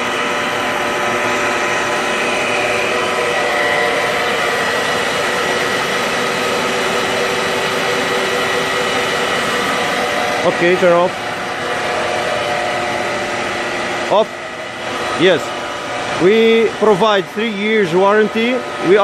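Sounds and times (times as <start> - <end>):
metal lathe running: 0.0 - 19.0.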